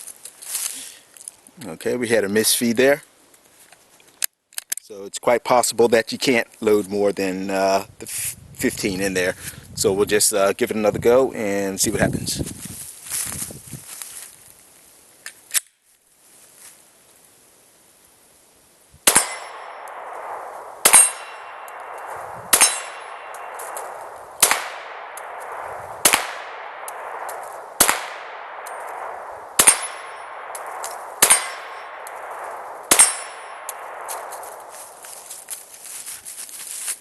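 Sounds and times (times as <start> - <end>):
pistol shots ringing: 19.0 - 35.4.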